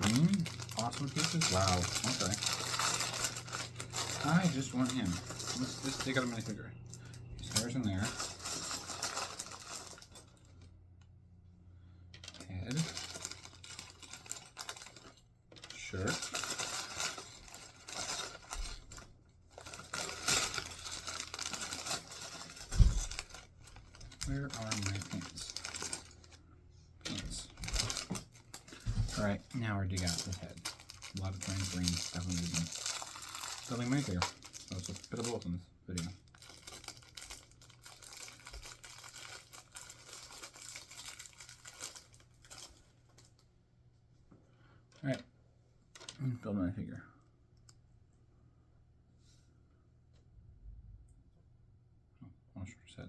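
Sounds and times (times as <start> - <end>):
plastic toy bricks rattling: 0.0 - 6.6, 12.2 - 19.0, 19.6 - 26.4, 27.1 - 42.6
packaging crinkling: 0.0 - 10.7, 12.2 - 26.4, 27.0 - 43.4.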